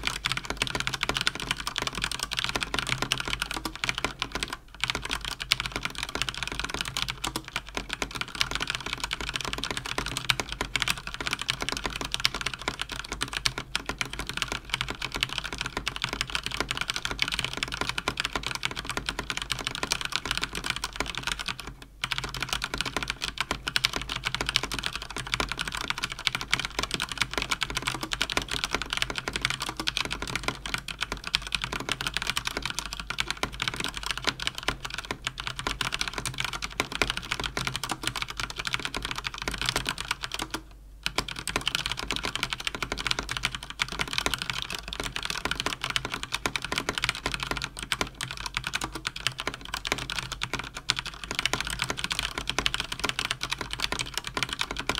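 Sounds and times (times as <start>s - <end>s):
mechanical keyboard typing: 0.0s - 54.9s.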